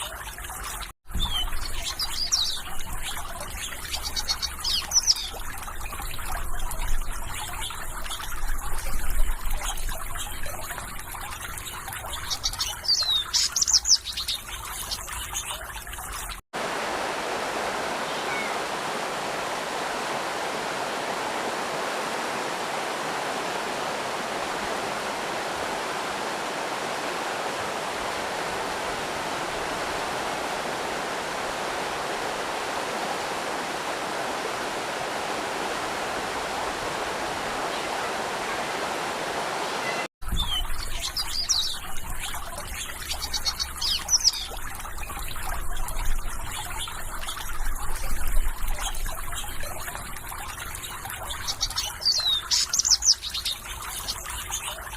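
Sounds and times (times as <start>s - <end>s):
rush of flowing water: 0.0s - 54.9s
water trickling and babbling: 0.0s - 54.9s
small birds chirping: 1.1s - 10.8s, 11.6s - 16.3s, 18.0s - 18.7s, 39.7s - 45.2s, 50.7s - 54.9s.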